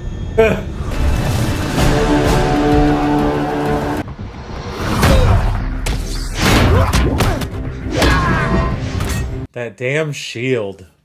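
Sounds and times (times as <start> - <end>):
film score: 0.4 - 9.4.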